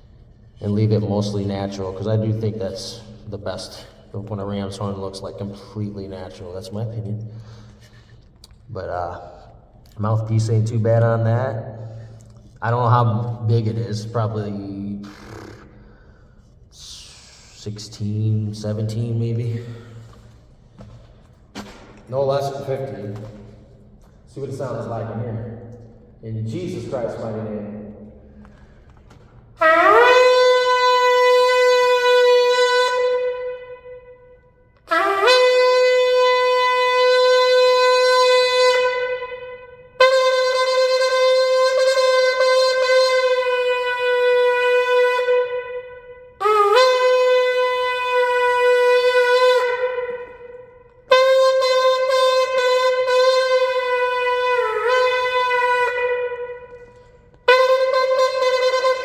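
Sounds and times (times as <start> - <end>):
ram's horn blasts: 26.5 - 59.0.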